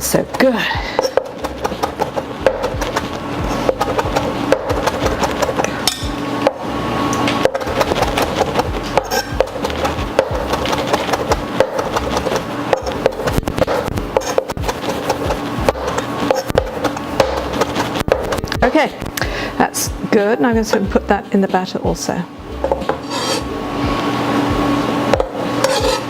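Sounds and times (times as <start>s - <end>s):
knife chopping on cutting board: 0.1s - 6.6s, 7.4s - 18.5s, 25.2s - 26.0s.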